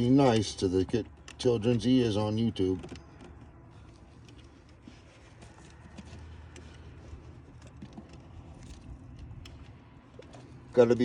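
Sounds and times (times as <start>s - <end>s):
small clicks and taps of wires: 0.2s - 1.9s, 5.4s - 10.4s.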